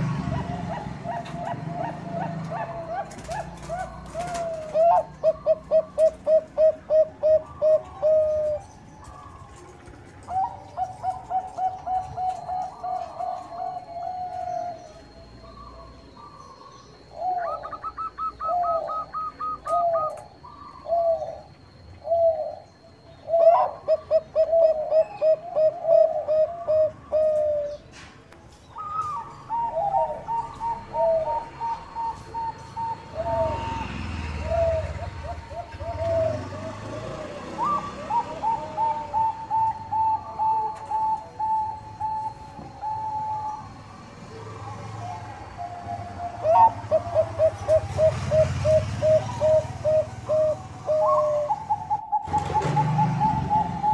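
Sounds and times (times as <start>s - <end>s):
dove cooing: 0.0s - 28.0s, 28.7s - 53.9s
faint steady high tone: 12.0s - 23.8s, 38.6s - 46.5s.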